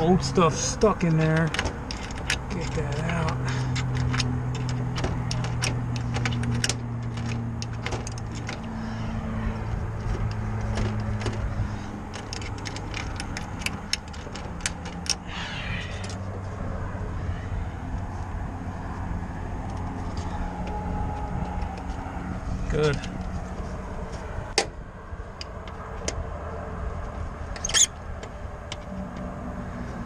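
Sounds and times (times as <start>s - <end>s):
hand tools clicking and tapping: 0.0s - 15.3s, 27.6s - 28.9s
low mechanical hum: 0.0s - 30.0s.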